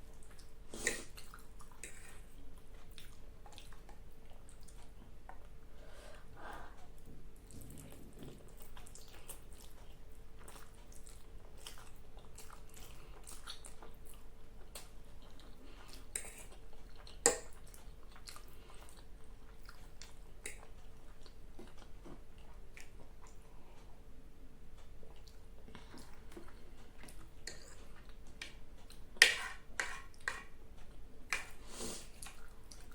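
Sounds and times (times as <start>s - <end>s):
chewing noodles: 6.8s - 23.4s, 32.1s - 32.9s.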